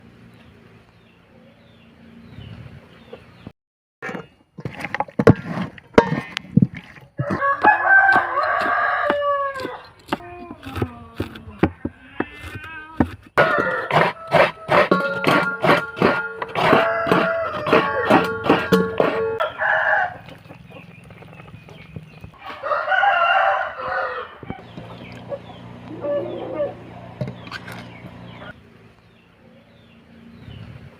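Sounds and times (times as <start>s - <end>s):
rooster crowing: 7.2s - 9.9s, 13.4s - 20.3s, 22.4s - 24.7s, 25.3s - 27.2s.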